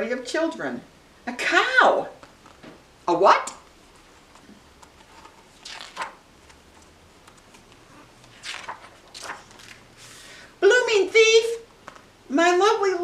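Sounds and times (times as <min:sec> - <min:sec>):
book pages turning: 0:03.6 - 0:10.0.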